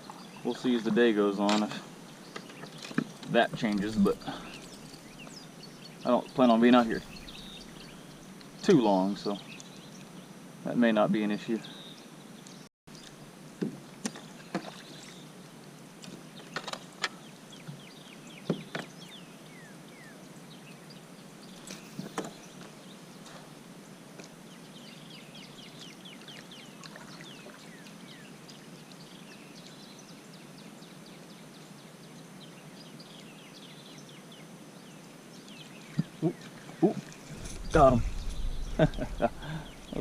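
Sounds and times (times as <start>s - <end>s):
small birds chirping: 0.0s - 10.8s, 24.4s - 40.0s
watery swish: 37.0s - 40.0s.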